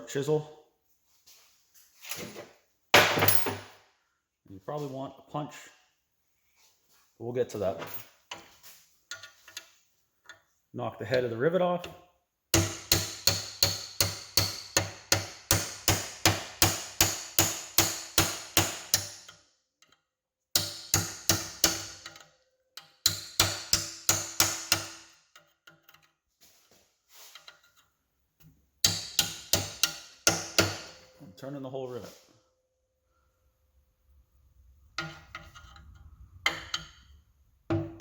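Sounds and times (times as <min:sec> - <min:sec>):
hammer striking chisel on metal: 0:12.5 - 0:19.4, 0:20.6 - 0:25.2, 0:28.8 - 0:31.2, 0:35.0 - 0:35.8, 0:36.4 - 0:37.0.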